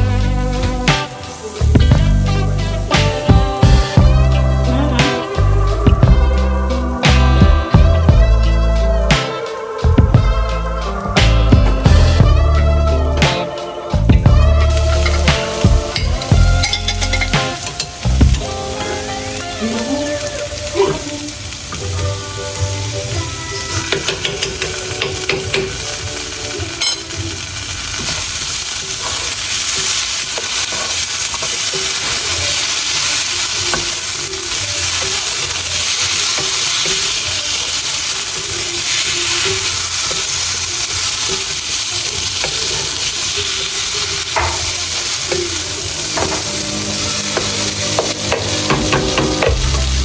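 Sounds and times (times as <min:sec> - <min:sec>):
food sizzling in a frying pan: 0:00.0 - 0:50.0
soft music: 0:00.0 - 0:50.0
utensil knocking against pan: 0:23.9 - 0:25.9, 0:47.4 - 0:49.8.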